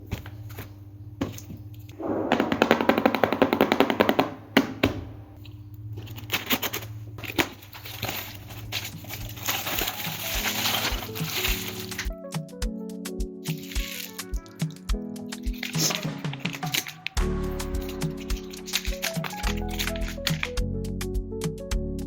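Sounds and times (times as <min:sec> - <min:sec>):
packaging being torn open: 0:06.0 - 0:12.1, 0:13.5 - 0:20.6.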